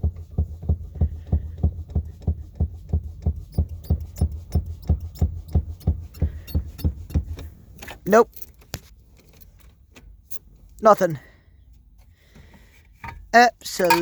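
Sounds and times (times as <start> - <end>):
rhythmic clicking with low thuds: 0.0 - 8.0.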